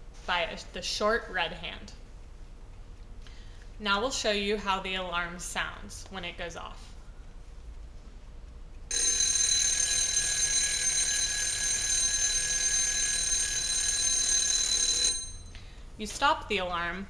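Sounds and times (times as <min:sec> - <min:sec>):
alarm clock bell ringing: 0:08.9 - 0:15.5.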